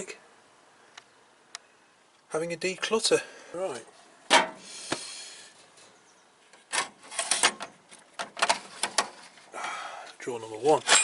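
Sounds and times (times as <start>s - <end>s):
hand tools clattering: 10.6s - 11.0s.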